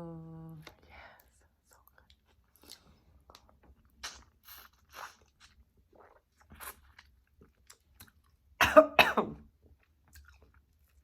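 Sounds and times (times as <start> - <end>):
person chewing food: 1.7 - 8.6, 9.6 - 11.0.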